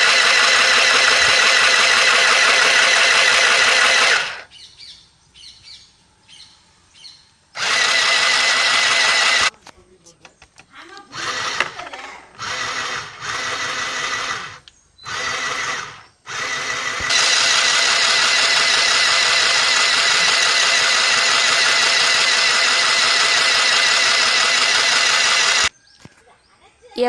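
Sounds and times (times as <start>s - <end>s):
sewing machine motor whirring: 0.0s - 4.5s, 7.6s - 9.5s, 11.1s - 25.7s.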